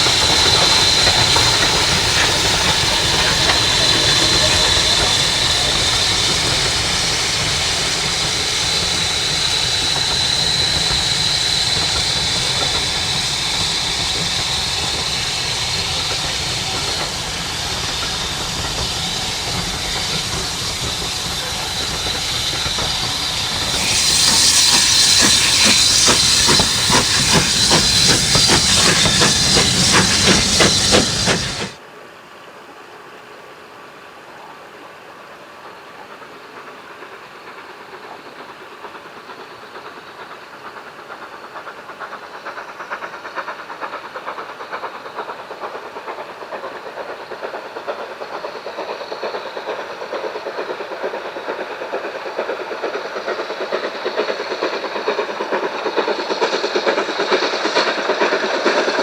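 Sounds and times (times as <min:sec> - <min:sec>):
rapid rattling beats: 0:00.0 - 0:31.8
steam locomotive hissing steam: 0:00.0 - 0:31.8, 0:34.4 - 0:59.0.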